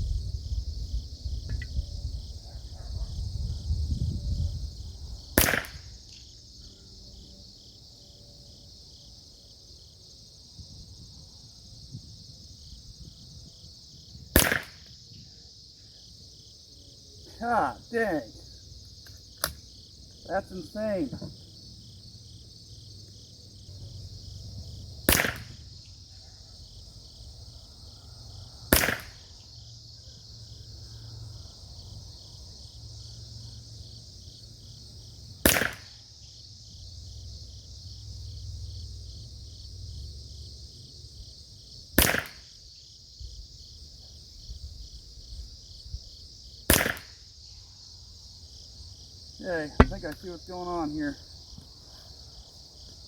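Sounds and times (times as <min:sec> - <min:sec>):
insects chirping: 0:00.0 - 0:53.0
rifle shots: 0:14.4 - 0:14.8, 0:25.1 - 0:25.6, 0:49.8 - 0:50.2.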